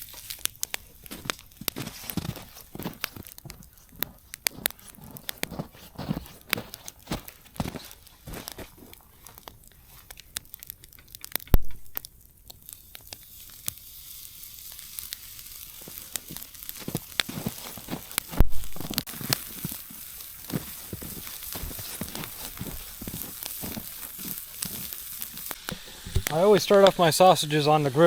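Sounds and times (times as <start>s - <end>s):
sausages sizzling on a grill: 0.0s - 28.0s
wood fire crackling: 0.0s - 28.0s.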